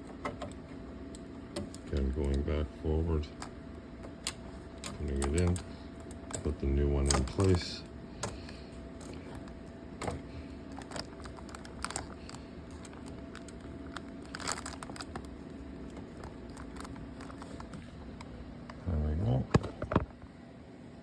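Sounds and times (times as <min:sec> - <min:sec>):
faint steady hum: 0:00.0 - 0:21.0
plastic clicks and rustling: 0:03.4 - 0:17.9.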